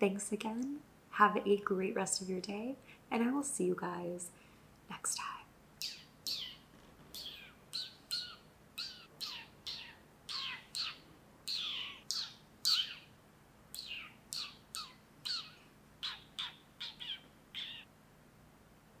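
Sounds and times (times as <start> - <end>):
bird chirping: 5.8 - 17.9.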